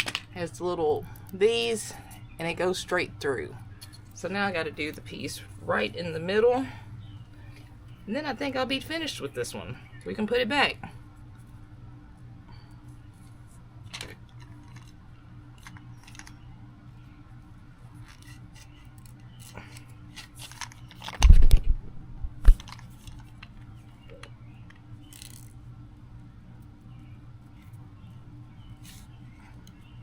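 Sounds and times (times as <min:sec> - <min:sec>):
small clicks and crunches: 0:13.8 - 0:15.0, 0:15.6 - 0:16.4, 0:17.9 - 0:21.7, 0:22.4 - 0:25.6.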